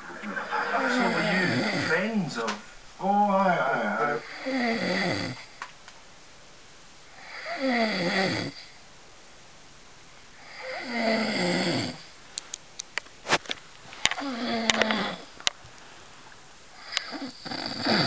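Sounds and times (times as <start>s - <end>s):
man snoring: 0.8s - 2.1s, 3.8s - 5.5s, 7.2s - 8.7s, 10.4s - 12.0s, 14.2s - 15.3s, 16.8s - 18.0s.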